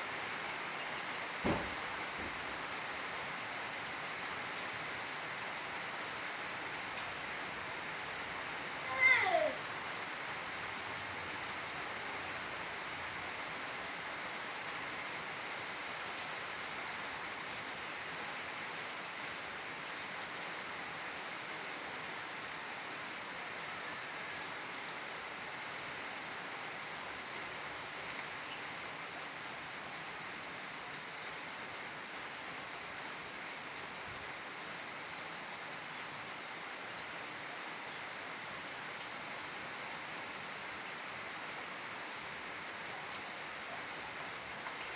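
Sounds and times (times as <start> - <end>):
steady rain hiss: 0.0 - 44.9
raindrop ticks: 1.4 - 2.8.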